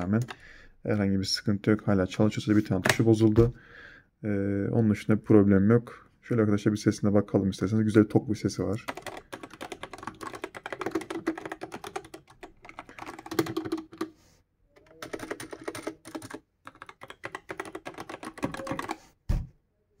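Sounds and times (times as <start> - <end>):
fast typing on mechanical keyboard: 8.8 - 14.1, 14.8 - 19.0.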